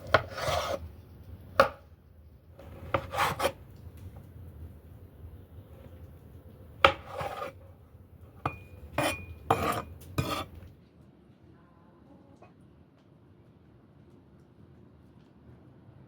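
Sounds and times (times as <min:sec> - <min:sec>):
metal kitchenware clattering: 0:08.4 - 0:10.7.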